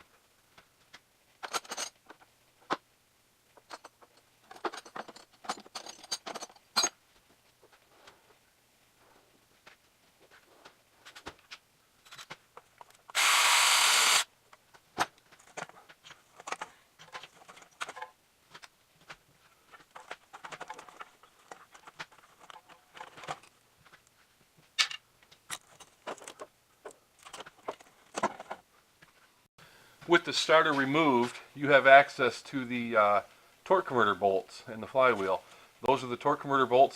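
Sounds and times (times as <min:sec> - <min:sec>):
metal tools clinking: 0:01.4 - 0:02.0, 0:03.6 - 0:07.0, 0:12.0 - 0:12.9
handheld power tool whirring: 0:13.1 - 0:14.3.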